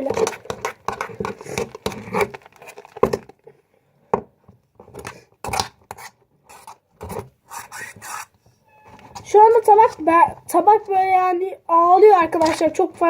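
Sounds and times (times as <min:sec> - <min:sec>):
slime scraping and squelching: 0:00.0 - 0:03.4, 0:05.1 - 0:08.3, 0:09.0 - 0:10.7, 0:11.8 - 0:13.0.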